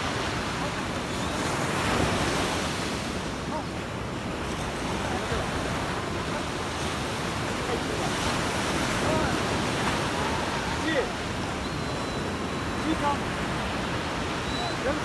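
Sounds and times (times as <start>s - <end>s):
sea waves washing onto beach: 0.0s - 15.0s.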